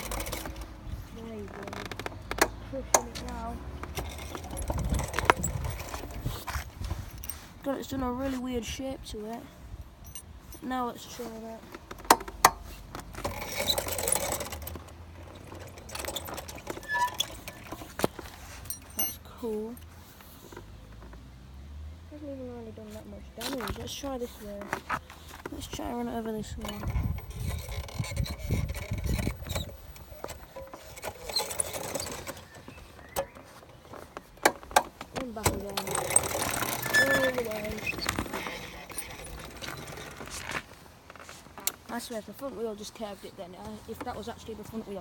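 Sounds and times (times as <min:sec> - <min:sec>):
quad bike motor humming: 0:25.9 - 0:33.4, 0:35.2 - 0:40.1.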